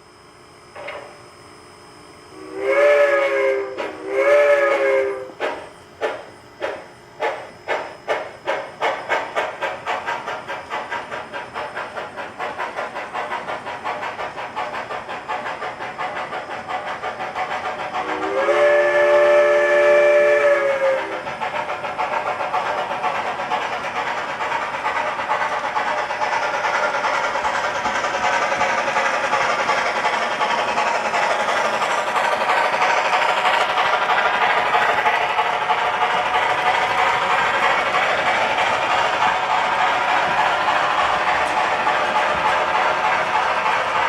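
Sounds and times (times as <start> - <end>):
model steam locomotive chuffs: 2.3 - 44.0.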